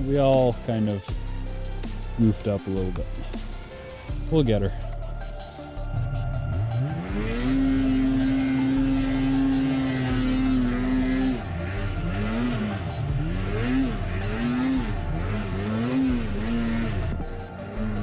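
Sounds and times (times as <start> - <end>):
snowmobile engine revving: 5.9 - 18.0.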